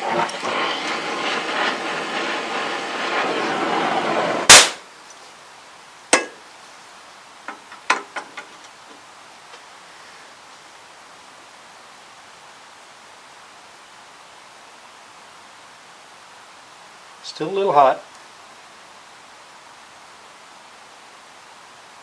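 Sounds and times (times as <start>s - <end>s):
loud sharp bang: 0.0s - 4.9s
torch hissing: 0.0s - 4.9s
sharp metallic knock: 6.1s - 6.4s.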